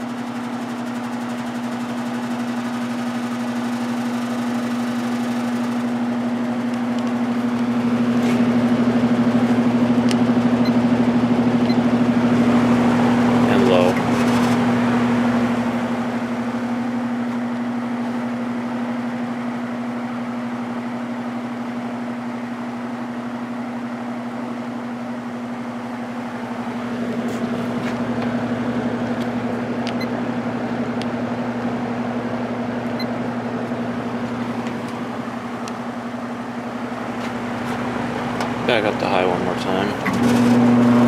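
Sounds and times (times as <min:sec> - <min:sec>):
electric fan motor hum: 0:00.0 - 0:41.0
air rushing from fan blades: 0:01.2 - 0:18.5.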